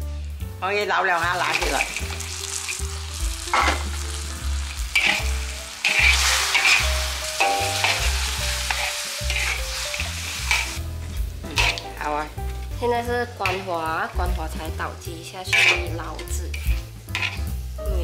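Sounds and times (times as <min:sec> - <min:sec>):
glaze sizzling and bubbling in pan: 0:01.0 - 0:18.0
spatula scraping pan: 0:04.8 - 0:12.1, 0:15.4 - 0:17.6.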